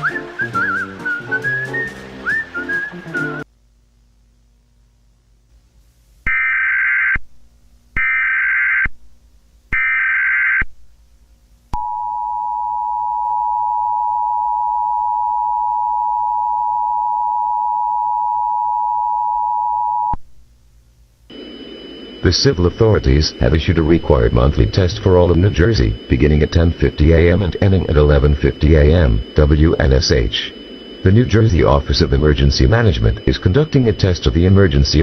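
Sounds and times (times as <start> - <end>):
data tone bursts: 21.3 - 35.0
steady two-tone alert signal: 21.3 - 35.0.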